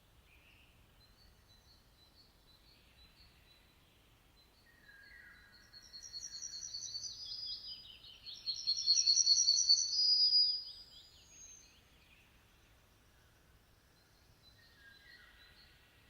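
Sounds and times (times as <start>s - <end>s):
bird trilling song: 4.7s - 11.8s.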